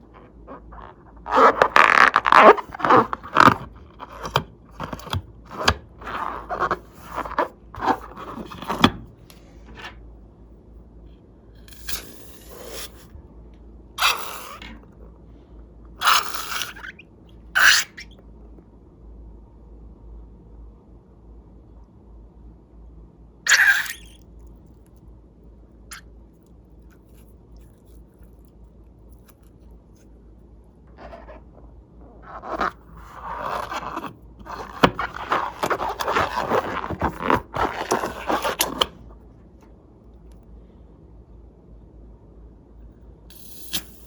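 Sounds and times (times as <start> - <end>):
slime squishing by hand: 0.0 - 9.1, 23.5 - 24.2, 30.9 - 39.2.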